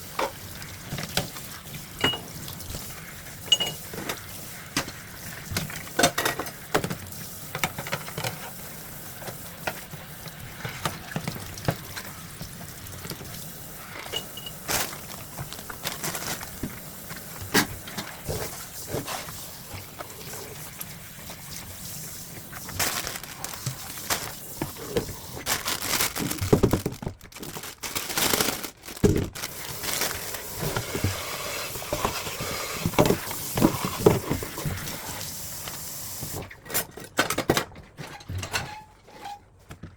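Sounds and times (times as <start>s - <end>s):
dishes clinking in a sink: 2.0s - 2.4s, 3.4s - 4.2s, 5.6s - 7.0s, 14.0s - 14.7s.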